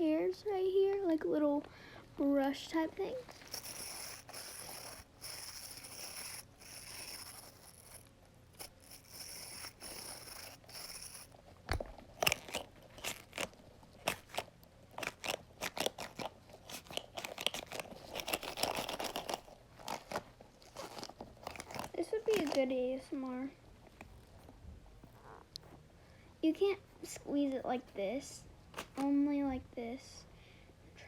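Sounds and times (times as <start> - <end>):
fidget toy clicks and crackles: 3.3 - 23.4.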